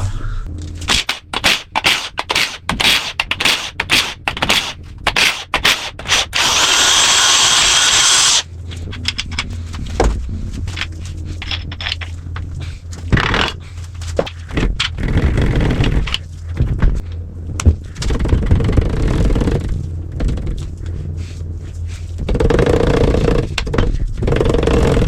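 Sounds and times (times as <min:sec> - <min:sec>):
steady low hum: 0:00.0 - 0:25.0
metal scraping and clinking: 0:10.5 - 0:13.1.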